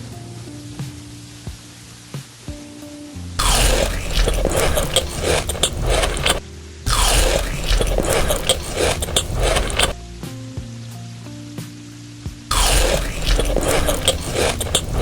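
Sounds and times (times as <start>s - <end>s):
crunchy food being chewed: 3.4s - 10.0s, 12.5s - 15.0s
soft background music: 10.0s - 13.0s.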